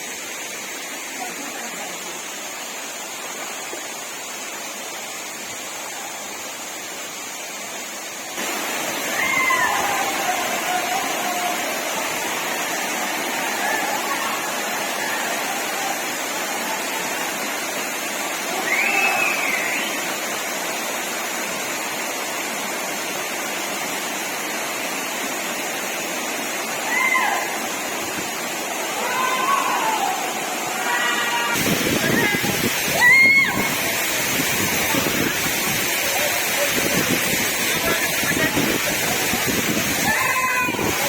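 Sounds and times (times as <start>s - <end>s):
waterfall rushing: 0.0s - 41.0s
short rising-and-falling calls: 18.5s - 20.3s.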